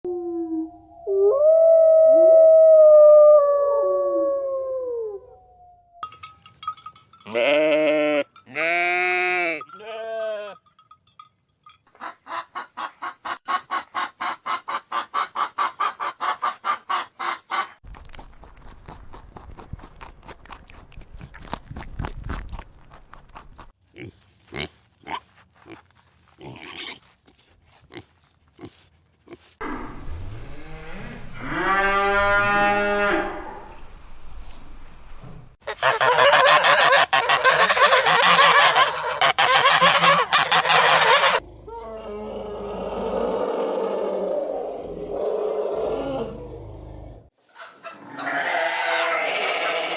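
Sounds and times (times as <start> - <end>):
drawn-out pitched animal call: 48.1 - 49.9.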